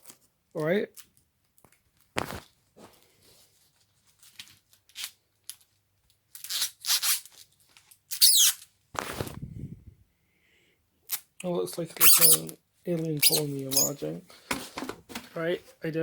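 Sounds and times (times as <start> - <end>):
paper packaging crinkling and tearing: 1.0 - 2.6, 3.7 - 8.0, 8.6 - 9.4.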